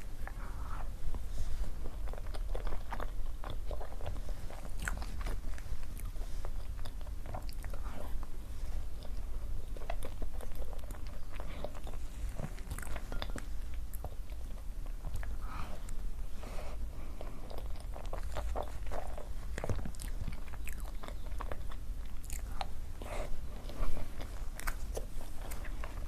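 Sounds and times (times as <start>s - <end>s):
person biting and chewing food: 1.8s - 8.3s, 17.2s - 26.0s.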